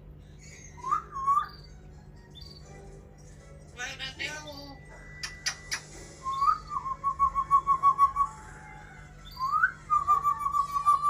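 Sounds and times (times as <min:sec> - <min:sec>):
parrot whistling: 0:00.5 - 0:01.8, 0:05.2 - 0:08.5, 0:09.2 - 0:11.0.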